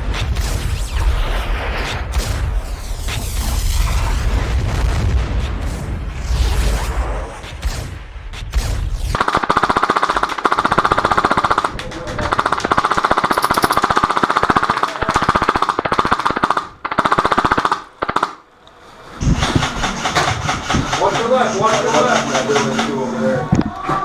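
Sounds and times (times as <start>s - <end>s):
airsoft machine gun bursts: 9.2s - 18.4s.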